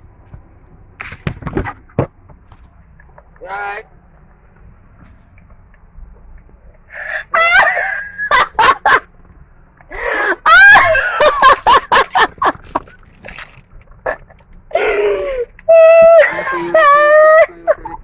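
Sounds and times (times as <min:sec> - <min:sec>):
high-pitched screaming and laughing: 0:14.9 - 0:18.0.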